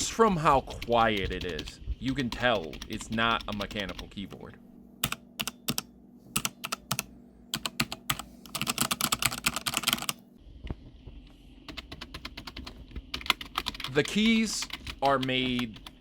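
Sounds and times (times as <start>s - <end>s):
typing on computer keyboard: 0.6s - 4.1s, 5.0s - 5.8s, 6.4s - 10.2s, 11.7s - 16.0s.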